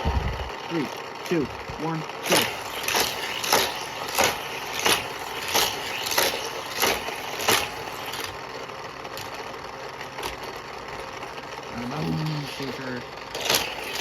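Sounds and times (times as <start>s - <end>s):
toy cars clacking on plastic track: 2.2s - 11.2s, 11.8s - 14.0s.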